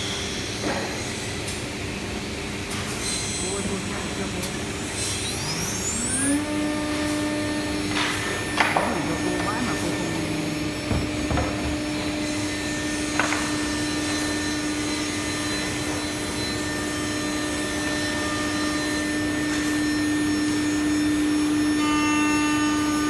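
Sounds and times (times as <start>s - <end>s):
wood router running: 3.0s - 23.0s
short knocks: 10.8s - 12.2s.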